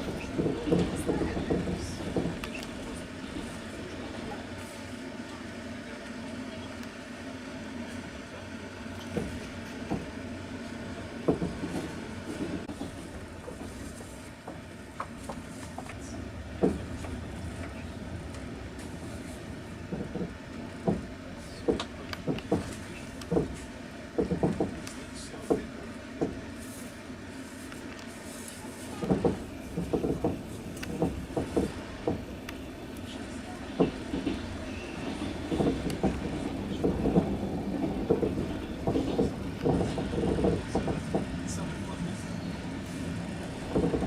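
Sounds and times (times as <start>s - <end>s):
train carriage rumble: 0.0s - 44.0s
wheels knocking over rail joints: 33.7s - 41.6s, 43.4s - 44.0s.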